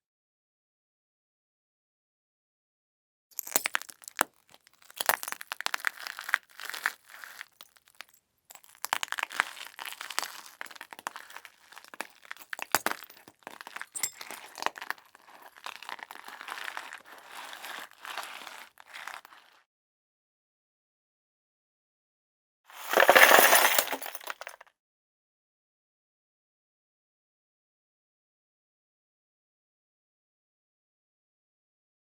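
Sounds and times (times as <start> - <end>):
glass breaking: 22.8 - 24.5.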